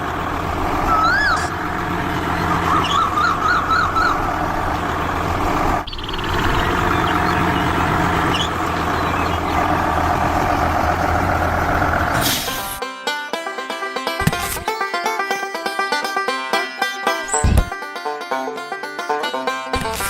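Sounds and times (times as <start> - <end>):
small motor humming: 1.6 - 11.2
warbling high tones: 5.8 - 10.1.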